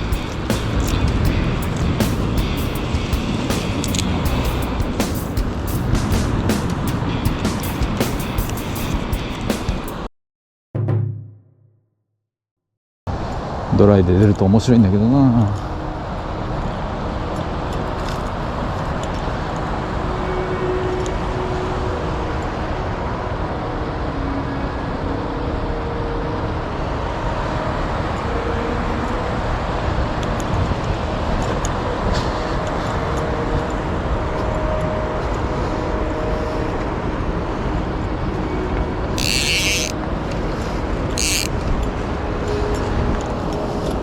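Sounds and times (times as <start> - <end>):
stream water rushing: 15.1 - 44.0.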